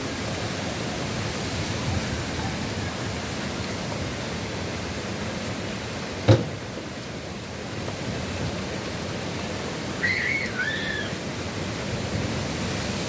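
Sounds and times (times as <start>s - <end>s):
hurricane wind: 0.0s - 13.0s
rain: 0.0s - 13.0s
high warbling whistle-like call: 10.0s - 11.1s.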